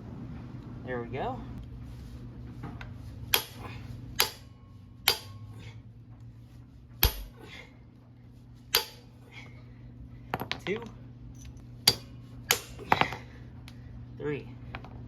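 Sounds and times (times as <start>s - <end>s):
hammer blows on impact screwdriver: 8.7s - 9.1s.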